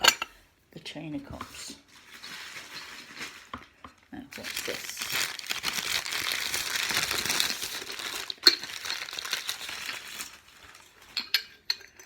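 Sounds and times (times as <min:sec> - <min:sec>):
packing paper crumpling: 0:01.9 - 0:11.1.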